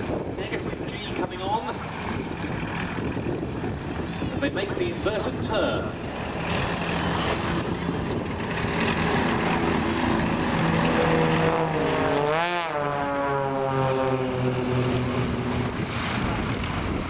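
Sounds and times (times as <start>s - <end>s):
propeller aircraft engines droning: 0.0s - 17.0s.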